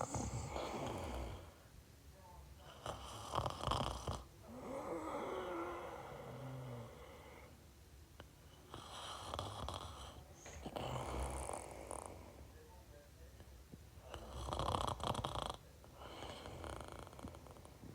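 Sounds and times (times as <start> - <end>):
person snoring: 0.0 - 1.6, 2.8 - 7.5.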